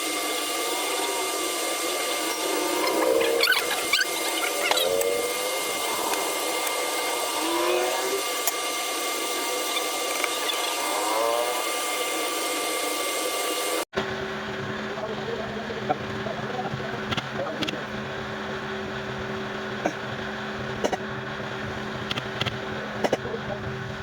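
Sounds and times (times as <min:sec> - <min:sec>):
low hum: 0:00.0 - 0:13.4
machine running with steady hiss: 0:00.0 - 0:24.0.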